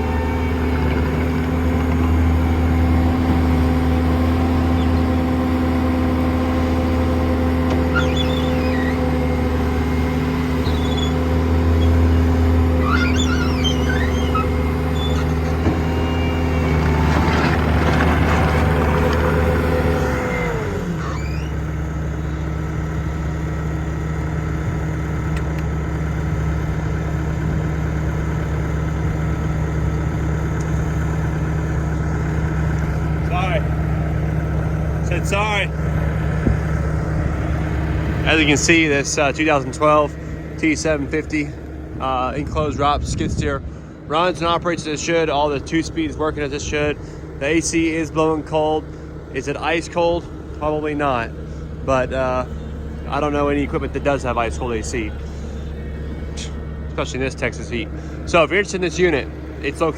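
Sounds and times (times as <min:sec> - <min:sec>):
diesel engine running: 0:00.0 - 0:59.9
brief squeaks: 0:07.7 - 0:09.3, 0:10.6 - 0:12.0, 0:12.8 - 0:17.6, 0:20.8 - 0:22.4
short rattle: 0:12.7 - 0:19.5.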